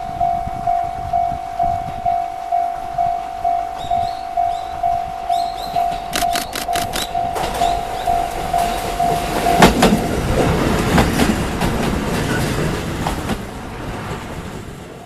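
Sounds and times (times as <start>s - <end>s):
level-crossing alarm pulsing: 0.0s - 10.0s
train rumble: 0.0s - 15.0s
train wheels clickety-clack: 5.6s - 15.0s.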